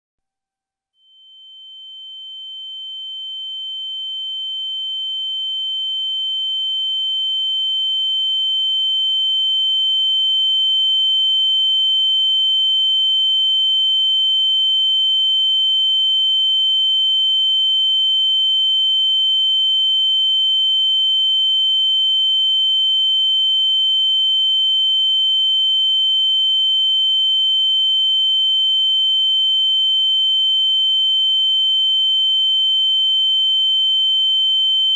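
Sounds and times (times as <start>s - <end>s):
high-pitched ringing tone: 1.0s - 7.4s.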